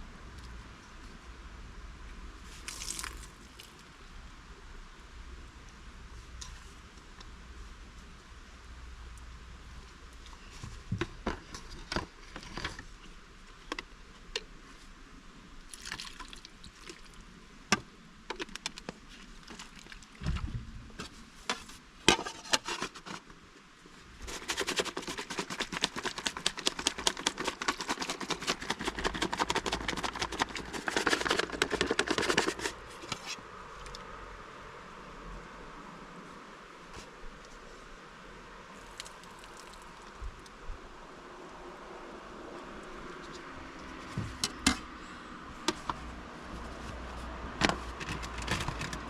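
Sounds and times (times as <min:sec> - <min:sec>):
utensils clicking and knocking: 0:24.3 - 0:32.8.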